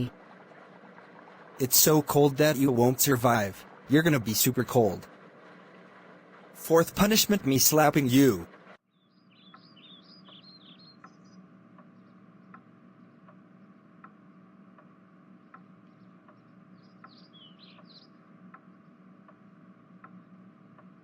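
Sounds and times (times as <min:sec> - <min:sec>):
low steady hum: 0:00.0 - 0:21.0
bird chirps: 0:06.6 - 0:12.2, 0:15.8 - 0:19.0.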